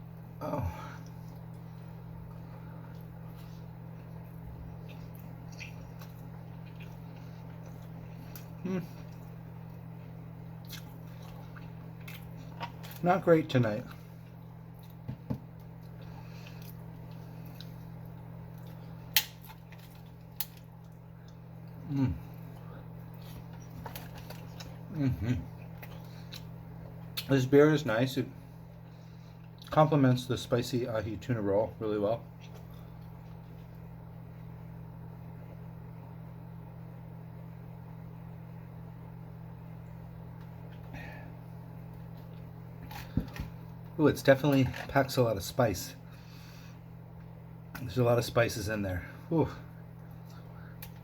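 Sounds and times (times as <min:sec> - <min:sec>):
steady low hum: 0:00.0 - 0:51.0
soft eating or handling sound: 0:00.1 - 0:27.5, 0:32.2 - 0:34.1, 0:39.9 - 0:45.2, 0:49.3 - 0:51.0.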